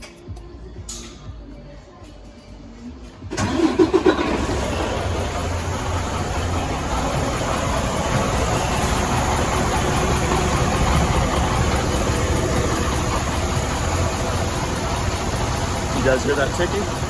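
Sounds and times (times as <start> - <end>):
diesel engine idling: 3.3 - 17.0
rapid valve train ticking: 4.5 - 17.0.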